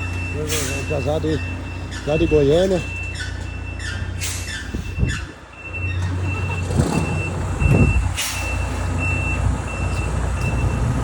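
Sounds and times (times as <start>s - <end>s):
truck diesel engines revving: 0.0s - 11.0s.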